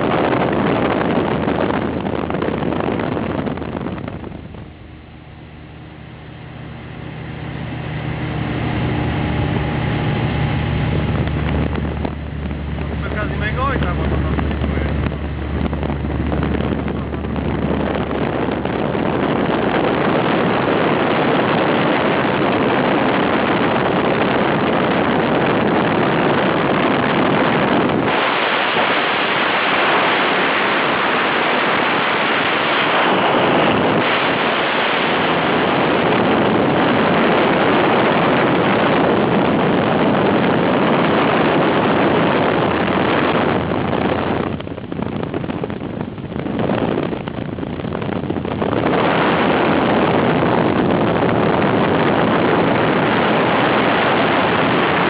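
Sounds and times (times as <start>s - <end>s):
wind buffeting microphone: 0.0s - 55.0s
wind rushing: 0.0s - 55.0s
sea surf: 12.2s - 15.0s, 27.2s - 43.4s.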